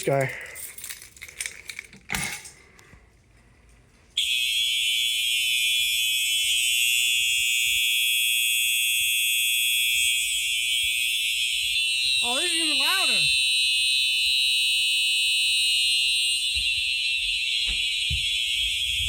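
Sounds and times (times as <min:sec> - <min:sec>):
fire alarm horn steady tone: 0:04.2 - 0:19.0.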